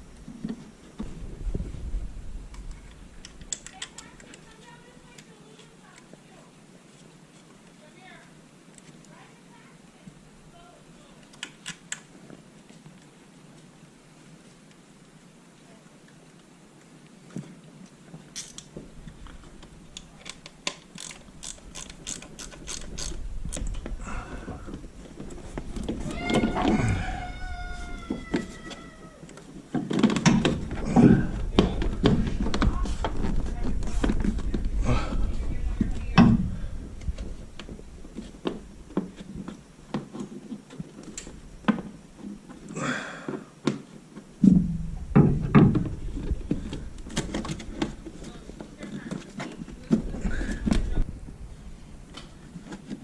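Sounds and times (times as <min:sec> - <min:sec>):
low rumble: 0:00.9 - 0:04.2, 0:30.6 - 0:38.2
ratchet clicking: 0:20.8 - 0:23.2.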